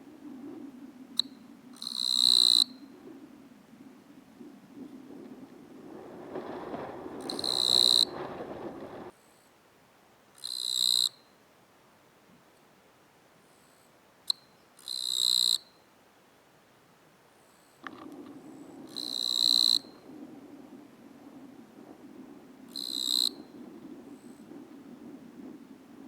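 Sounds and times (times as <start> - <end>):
low background noise: 0.0 - 26.0
katydid buzzy chirps: 1.2 - 2.8, 10.4 - 11.3, 13.6 - 15.8, 18.9 - 19.8, 22.7 - 23.5.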